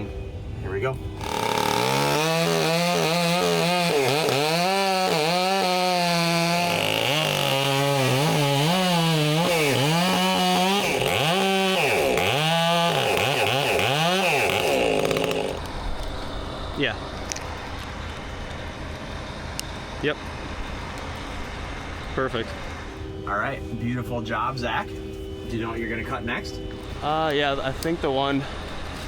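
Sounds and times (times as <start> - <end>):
chainsaw cutting wood: 1.2 - 15.7.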